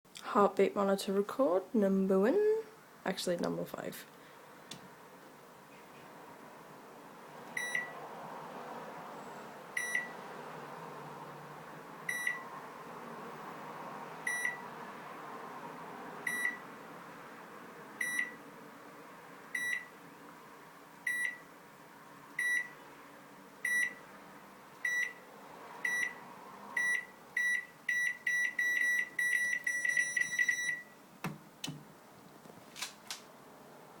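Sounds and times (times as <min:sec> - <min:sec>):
heart rate monitor beeping: 0:07.6 - 0:08.0, 0:09.8 - 0:10.1, 0:12.1 - 0:12.4, 0:14.3 - 0:14.6, 0:16.3 - 0:16.6, 0:18.0 - 0:18.3, 0:19.6 - 0:19.9, 0:21.1 - 0:21.4, 0:22.4 - 0:22.7, 0:23.6 - 0:24.0, 0:24.8 - 0:25.2, 0:25.8 - 0:26.2, 0:26.8 - 0:31.0.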